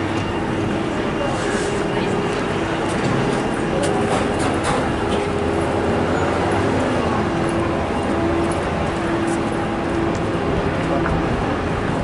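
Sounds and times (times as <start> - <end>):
street traffic noise: 0.0 - 12.0.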